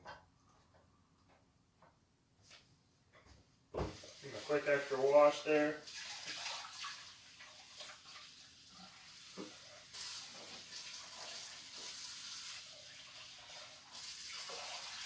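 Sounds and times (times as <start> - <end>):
water running from tap into sink: 4.0 - 15.0.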